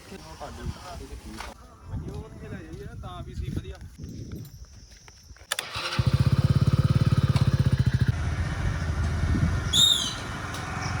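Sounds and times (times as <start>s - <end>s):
small engine running: 5.5s - 11.0s
short falling chirp: 9.7s - 10.3s.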